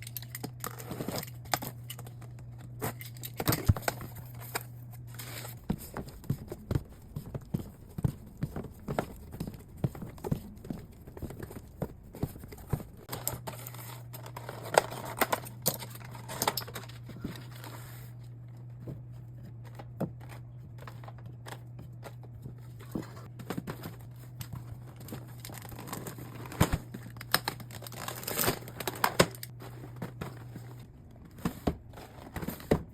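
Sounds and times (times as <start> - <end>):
steady low hum: 0.0 - 32.9
packaging crinkling: 24.8 - 30.5
items being set down: 28.8 - 32.9.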